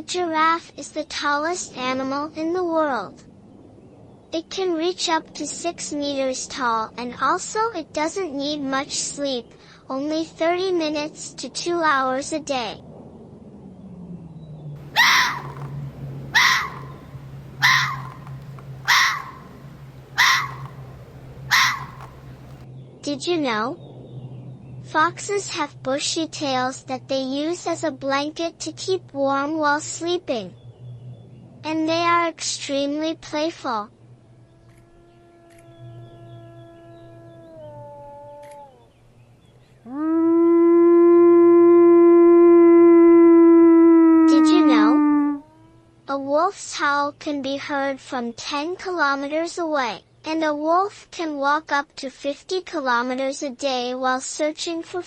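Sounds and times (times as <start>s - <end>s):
wolf howling: 14.8s - 22.6s, 34.4s - 38.9s, 44.0s - 45.9s
low steady hum: 14.8s - 46.3s
short harsh animal call: 14.9s - 22.6s.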